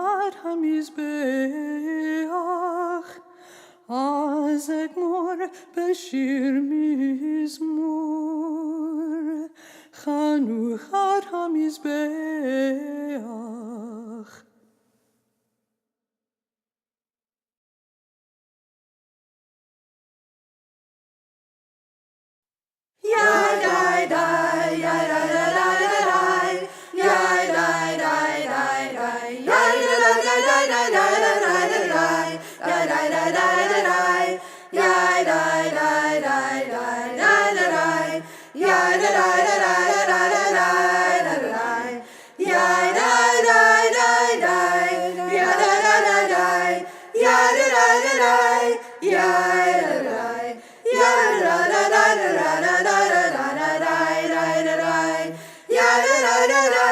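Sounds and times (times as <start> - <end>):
voices singing a cappella: 0.0 - 14.5, 23.0 - 56.9.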